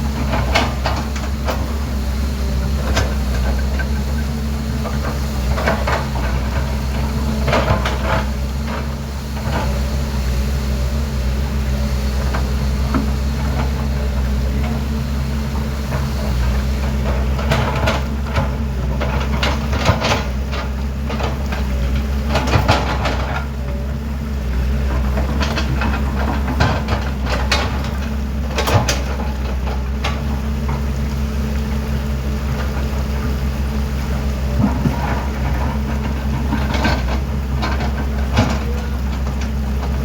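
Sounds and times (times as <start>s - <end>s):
excavator diesel engine running: 0.0s - 40.0s
machine knocks and clatter: 15.6s - 23.5s, 24.9s - 30.8s, 34.5s - 40.0s.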